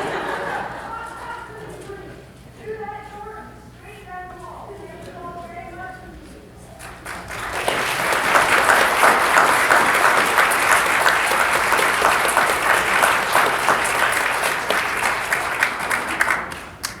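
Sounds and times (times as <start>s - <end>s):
audience applauding: 6.8s - 17.0s.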